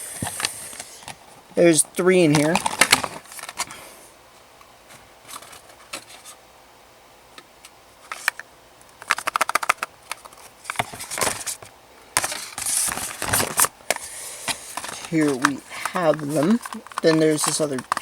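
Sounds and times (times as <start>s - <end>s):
packaging clicks: 2.3s - 3.8s, 8.1s - 11.6s, 12.2s - 18.0s
packaging rustling: 2.3s - 3.8s, 5.2s - 6.4s, 9.0s - 18.0s.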